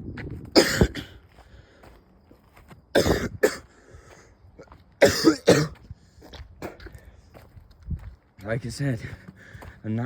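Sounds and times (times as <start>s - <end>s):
man coughing harshly: 0.5s - 1.2s, 2.9s - 3.7s, 5.0s - 5.8s.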